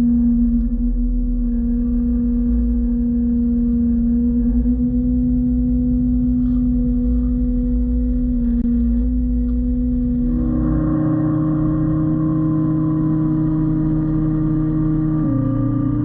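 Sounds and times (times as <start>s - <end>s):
excavator diesel engine: 2.3s - 16.0s.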